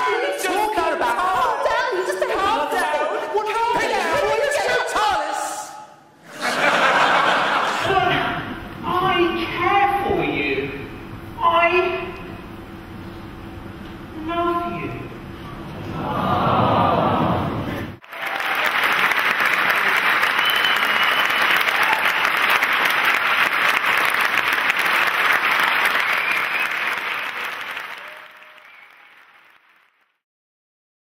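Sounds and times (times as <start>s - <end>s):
audience applauding: 18.0s - 30.2s.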